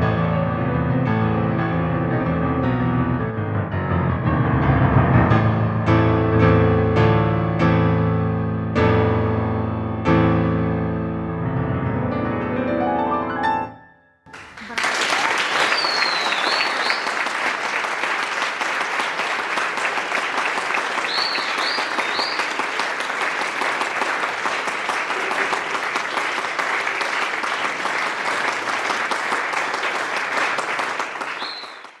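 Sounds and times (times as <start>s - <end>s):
audience applauding: 14.3s - 32.0s
high whistles: 14.9s - 17.5s, 20.8s - 22.8s, 31.2s - 32.0s.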